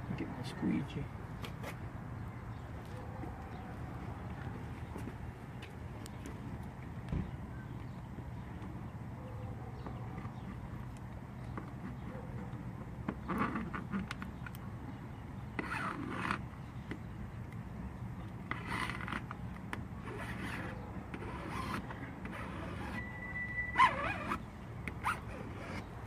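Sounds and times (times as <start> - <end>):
plastic squeegee scraping: 20.0 - 23.0.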